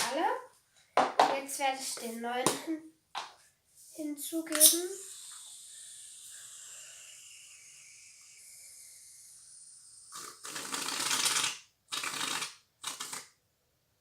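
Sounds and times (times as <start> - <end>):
aerosol can spraying: 10.1 - 13.3.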